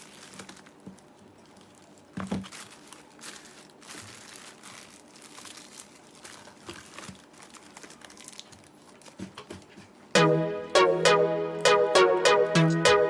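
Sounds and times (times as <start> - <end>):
packaging crinkling and rustling: 0.0 - 10.1.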